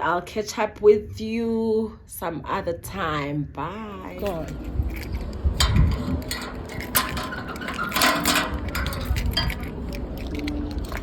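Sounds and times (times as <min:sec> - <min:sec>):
clinks and knocks of objects handled: 0:04.1 - 0:11.0.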